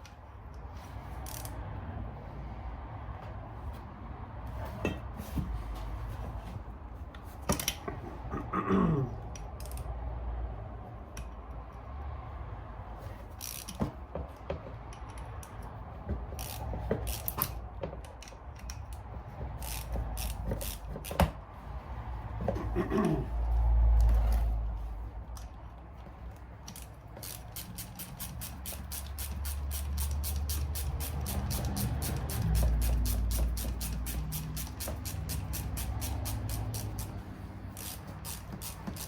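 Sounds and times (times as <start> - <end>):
ratchet wrench clicking: 1.2 - 1.6, 9.3 - 10.0, 13.3 - 13.9, 14.9 - 19.0, 19.6 - 21.4, 26.6 - 39.0.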